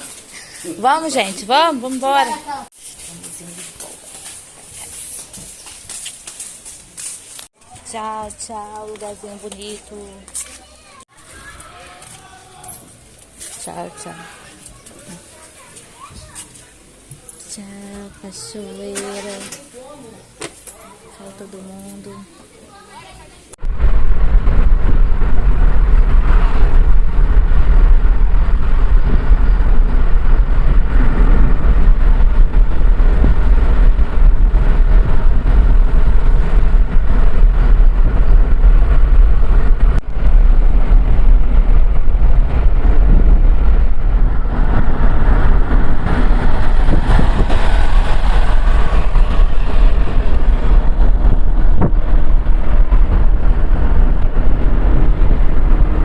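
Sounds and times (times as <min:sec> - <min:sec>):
vehicle engine and road rumble: 0:23.5 - 0:56.0.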